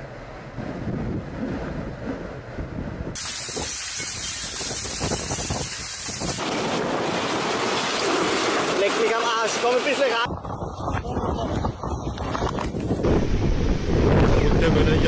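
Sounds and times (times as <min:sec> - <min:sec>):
wind buffeting microphone: 0:00.0 - 0:08.9, 0:10.2 - 0:15.0
hiss of driving rain: 0:03.2 - 0:10.3.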